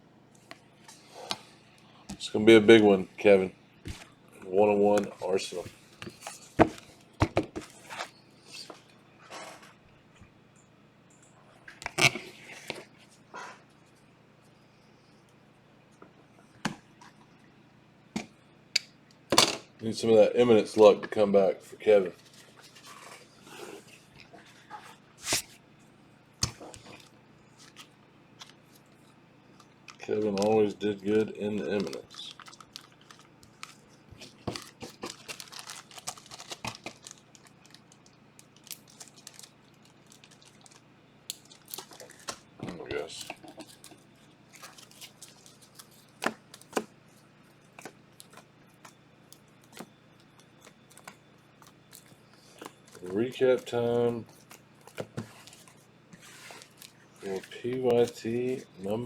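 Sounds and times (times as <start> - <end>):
card packaging rustling: 29.9 - 40.8, 41.4 - 46.9, 47.6 - 59.0.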